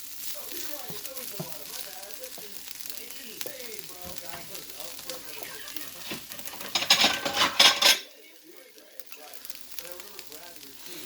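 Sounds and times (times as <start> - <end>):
food sizzling in a pan: 0.0 - 11.0
utensil scraping a pan: 4.0 - 8.2.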